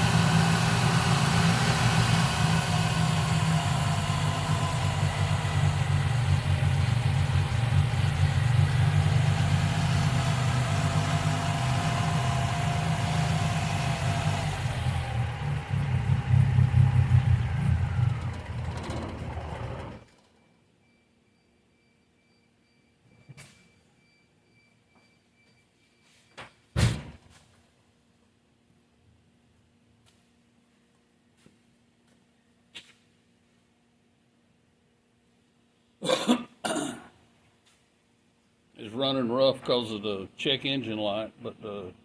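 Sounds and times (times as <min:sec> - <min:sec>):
car engine idling rough: 0:00.0 - 0:20.1.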